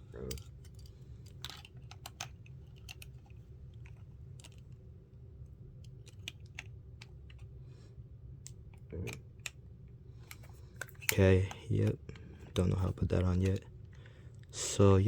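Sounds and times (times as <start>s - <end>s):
steady low hum: 0.0s - 15.0s
plastic clicks and crinkles: 0.2s - 4.8s, 5.8s - 7.5s.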